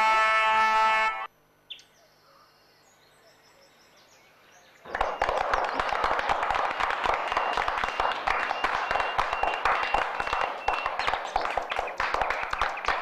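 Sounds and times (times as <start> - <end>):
crowd clapping: 4.9 - 13.0.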